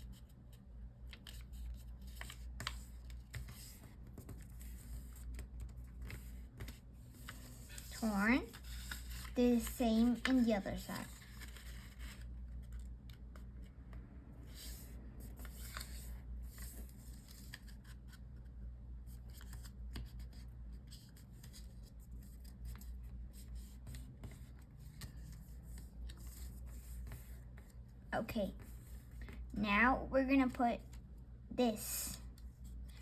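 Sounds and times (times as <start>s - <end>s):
paper being folded: 0.1s - 13.7s, 14.6s - 18.4s, 19.1s - 27.8s.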